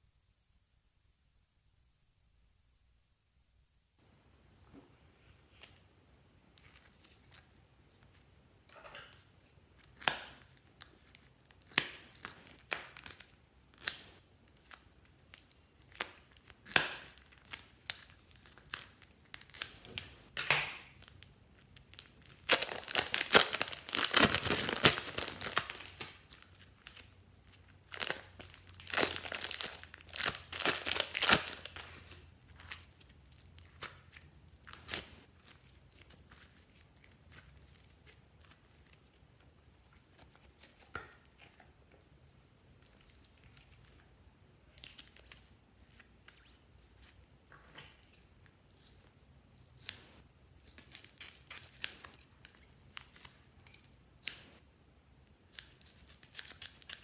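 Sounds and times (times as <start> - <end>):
crinkling and tearing: 9.4 - 42.0, 44.7 - 49.2, 49.8 - 54.6, 55.5 - 57.0.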